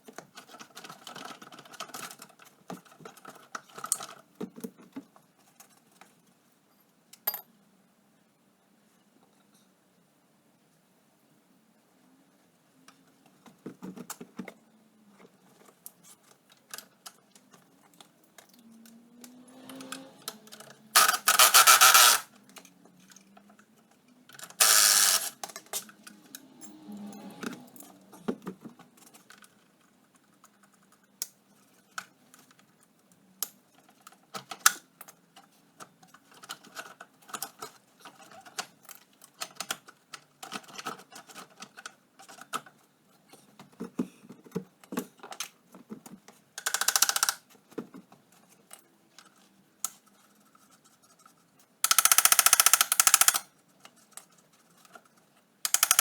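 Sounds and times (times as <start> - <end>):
hand tools clicking on metal: 19.6 - 22.3, 46.6 - 47.4, 51.9 - 53.5, 55.7 - 56.0.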